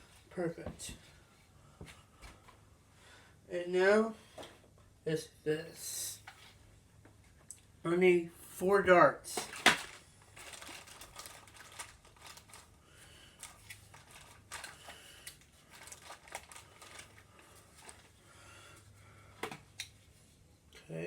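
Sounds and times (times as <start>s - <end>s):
rustling: 9.4s - 18.9s.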